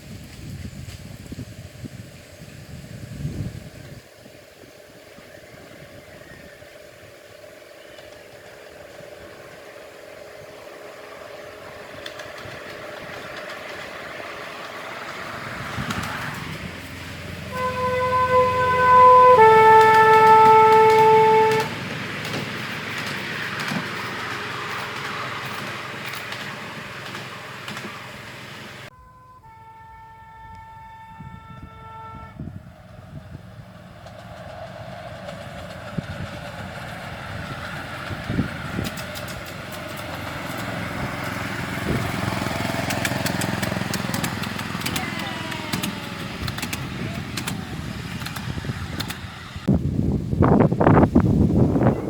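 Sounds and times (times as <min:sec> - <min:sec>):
train rumbling rattle on track: 0:00.0 - 0:29.0, 0:30.5 - 0:52.0
locomotive engine throbbing: 0:04.8 - 0:52.0
track clicks: 0:11.4 - 0:17.0, 0:19.6 - 0:28.9, 0:38.0 - 0:49.6
two-tone locomotive horn: 0:15.2 - 0:22.4, 0:28.9 - 0:34.2, 0:40.2 - 0:49.6
sharp clicks: 0:42.8 - 0:49.3.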